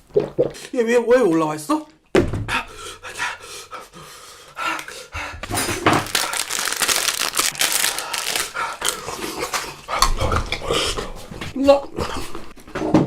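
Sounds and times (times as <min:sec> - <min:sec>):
close rustling and crinkling: 0:05.6 - 0:09.6.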